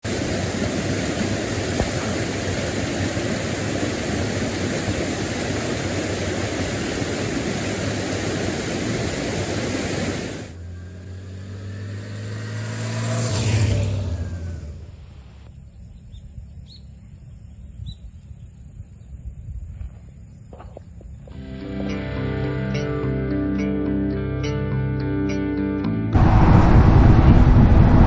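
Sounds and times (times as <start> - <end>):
vehicle passing by: 10.4 - 15.4
motorcycle engine: 10.5 - 17.2
wind rush: 26.2 - 28.0.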